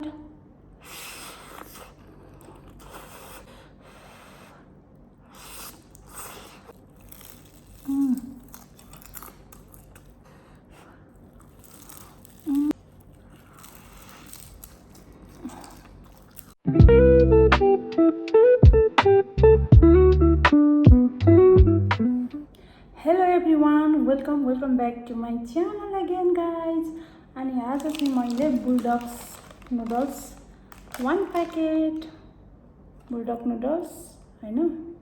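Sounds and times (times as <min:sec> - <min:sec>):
crunching and chewing: 0:00.9 - 0:04.4, 0:05.2 - 0:16.6, 0:27.7 - 0:31.8.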